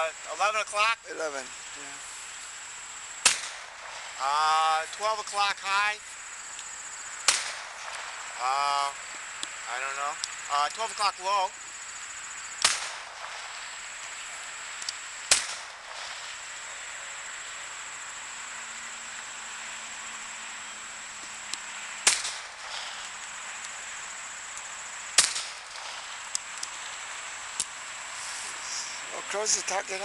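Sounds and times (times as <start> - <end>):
handgun shots: 3.2 - 4.0, 7.3 - 8.1, 12.6 - 13.5, 15.3 - 16.3, 22.0 - 23.0, 25.2 - 26.2.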